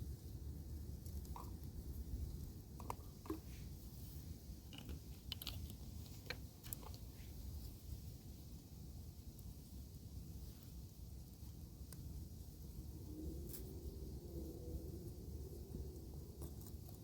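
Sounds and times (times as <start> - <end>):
faint clicks and crackles: 0.9 - 3.6, 4.7 - 7.3
wind rumbling on microphone: 9.7 - 17.0.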